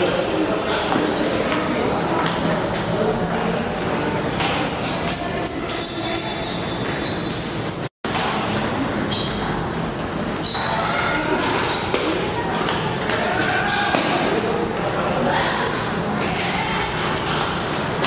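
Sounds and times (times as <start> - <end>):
steady background noise: 0.0 - 18.0
sneaker squeaks on floor: 0.3 - 1.2, 4.3 - 14.1, 15.6 - 18.0.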